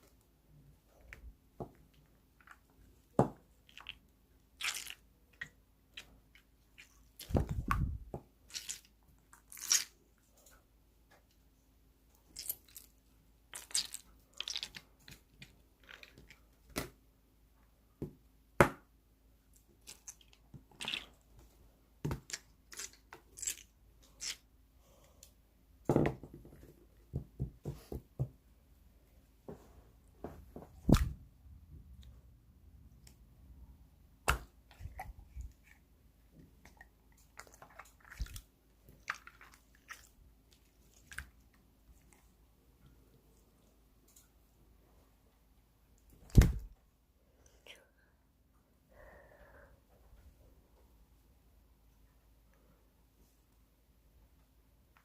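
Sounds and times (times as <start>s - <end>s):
slime squelching: 1.0s - 10.0s, 12.2s - 16.9s, 19.6s - 21.3s, 22.1s - 25.1s, 30.8s - 31.3s, 34.2s - 42.5s.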